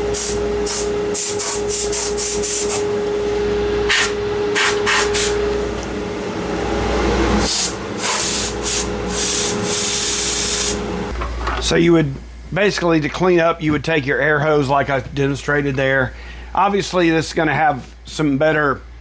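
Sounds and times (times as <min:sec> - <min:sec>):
air blow gun hissing: 0:00.0 - 0:03.0, 0:03.9 - 0:05.5, 0:07.4 - 0:11.0
dust collector humming: 0:00.0 - 0:18.8.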